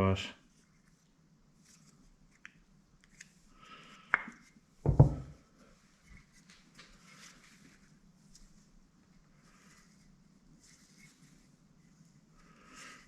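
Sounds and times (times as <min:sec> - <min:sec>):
metallic knock: 0:04.9 - 0:05.3.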